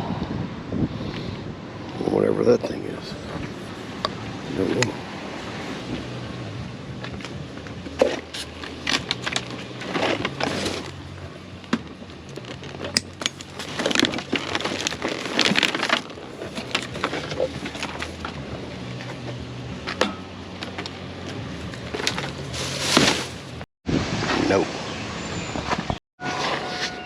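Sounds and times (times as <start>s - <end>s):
junk being handled: 11.7s - 23.6s.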